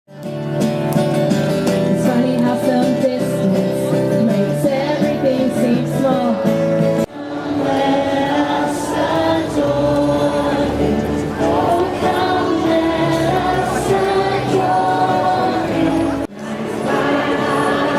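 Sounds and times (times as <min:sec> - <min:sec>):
group singing a carol: 0:07.0 - 0:17.9.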